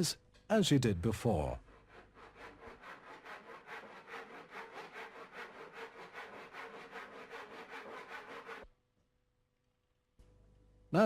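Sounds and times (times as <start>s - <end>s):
hand saw cutting wood: 1.6s - 8.7s.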